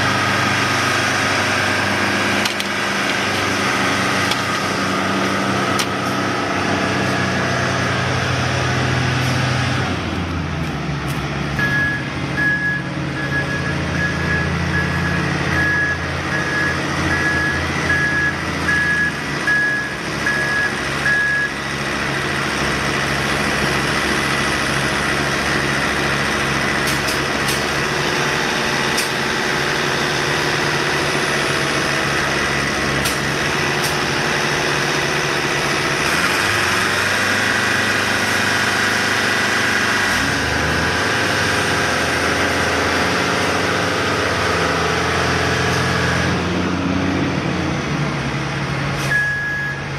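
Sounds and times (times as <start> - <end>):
heavy machinery engines running: 0.0 - 49.9
reversing alarm beeping: 11.6 - 21.6, 49.1 - 49.9.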